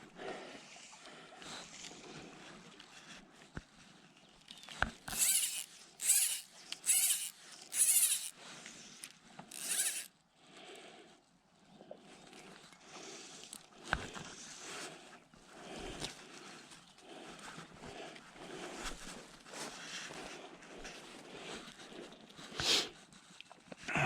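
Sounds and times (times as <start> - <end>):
fly reel rasping buzz: 5.1 - 8.3, 9.5 - 10.1.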